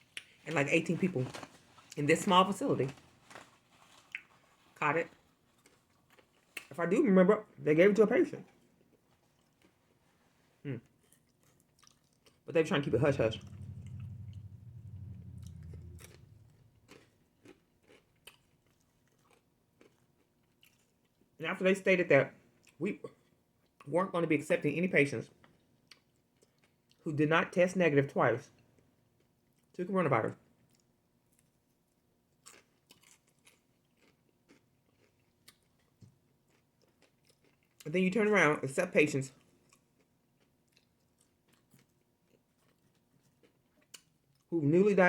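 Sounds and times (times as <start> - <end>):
close chewing: 11.0 - 12.5, 13.3 - 21.2, 32.4 - 37.9, 39.6 - 44.5
low closed-mouth hum: 12.5 - 17.0.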